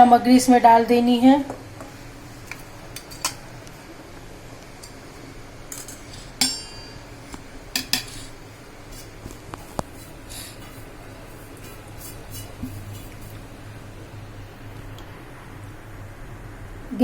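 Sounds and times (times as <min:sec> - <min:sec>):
spoon clinking against bowl: 0:05.7 - 0:07.1.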